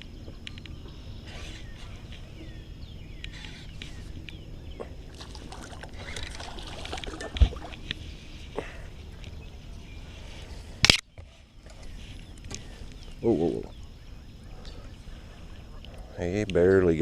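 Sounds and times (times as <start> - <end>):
faint bird chirps: 0.0 - 6.5
low steady rumble: 0.0 - 10.8.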